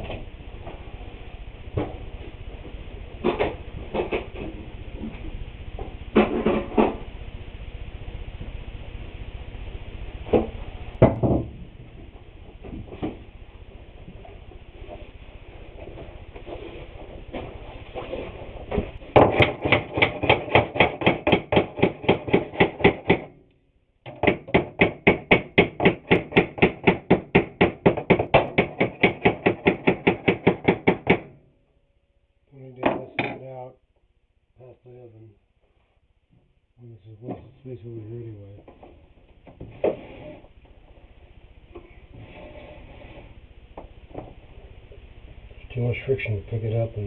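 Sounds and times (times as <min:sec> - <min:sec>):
low background hiss and hum: 0:00.0 - 0:47.0
hammer striking wooden board: 0:19.1 - 0:23.4, 0:24.1 - 0:31.4.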